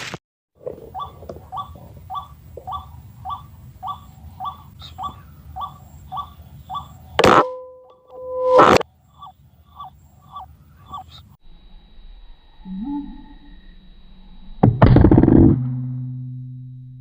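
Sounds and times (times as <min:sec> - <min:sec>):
waterhen calling: 0:00.6 - 0:07.4, 0:09.1 - 0:11.3
sudden loud steady tones: 0:00.9 - 0:17.0.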